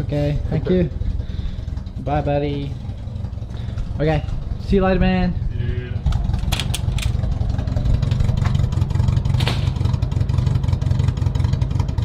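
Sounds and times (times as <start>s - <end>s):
car engine droning: 0.0s - 12.0s
sharp clicks: 6.1s - 7.2s.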